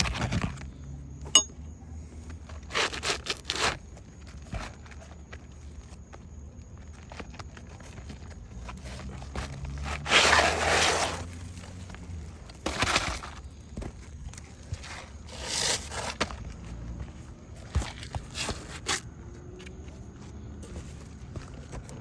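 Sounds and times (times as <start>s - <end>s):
scraping on roof shingles: 7.7s - 19.0s.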